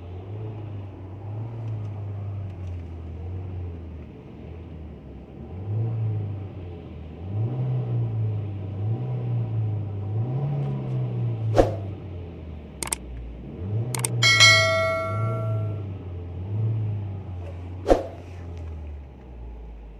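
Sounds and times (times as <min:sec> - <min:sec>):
ringing metallic clang: 0:14.0 - 0:15.8
sharp knocks: 0:14.0 - 0:15.8.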